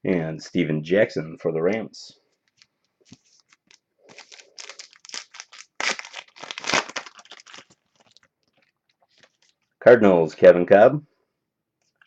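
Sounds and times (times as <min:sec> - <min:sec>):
wrapper tearing and crinkling: 0:03.4 - 0:09.6.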